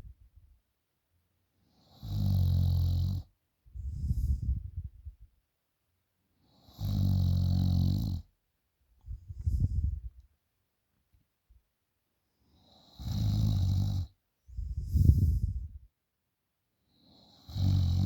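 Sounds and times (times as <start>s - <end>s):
woman snoring loudly: 6.6s - 8.2s, 12.8s - 14.1s, 17.2s - 18.0s.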